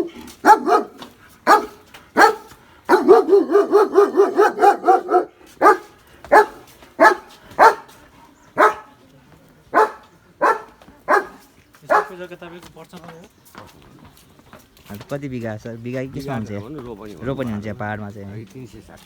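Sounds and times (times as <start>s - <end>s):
dog barking: 0.0s - 7.9s, 8.6s - 8.9s, 9.7s - 12.2s.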